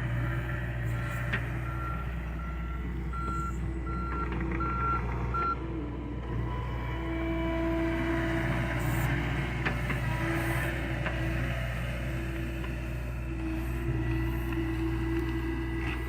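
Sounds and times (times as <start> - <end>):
diesel engine humming: 0.0 - 16.0.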